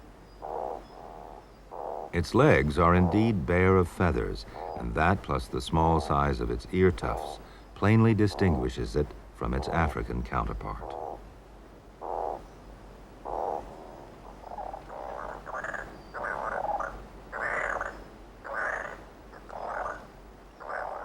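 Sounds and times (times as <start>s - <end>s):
owl rasping calls: 0.3s - 3.4s, 4.3s - 4.9s, 10.8s - 11.2s, 12.0s - 12.6s, 13.2s - 21.0s.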